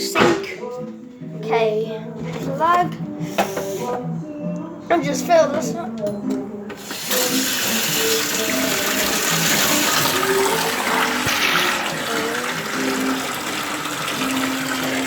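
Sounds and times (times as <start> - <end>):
tap water filling sink: 6.8 - 15.0.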